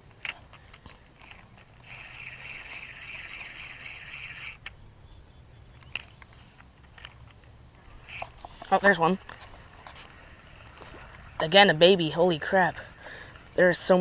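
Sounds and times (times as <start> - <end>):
light reel clicks: 0.1 - 4.8, 5.8 - 11.5
fishing reel whirring: 1.2 - 4.7, 7.8 - 14.0.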